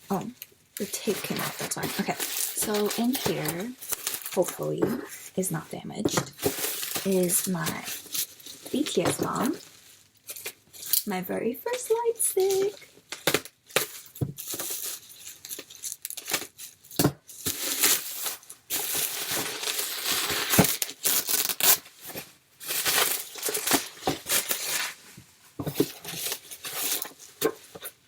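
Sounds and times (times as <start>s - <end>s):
wrapping crinkling: 0.0s - 28.0s
package wrapping tearing: 1.0s - 5.2s, 17.4s - 22.0s, 22.6s - 25.0s.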